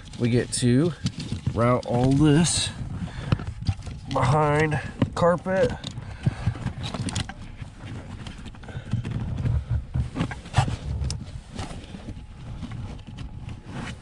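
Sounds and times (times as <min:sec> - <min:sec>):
wiring harness rustling: 0:00.0 - 0:14.0.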